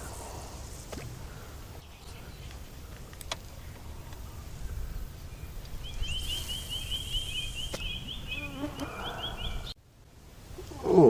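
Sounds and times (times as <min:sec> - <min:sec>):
bird chirping: 0:00.0 - 0:09.8.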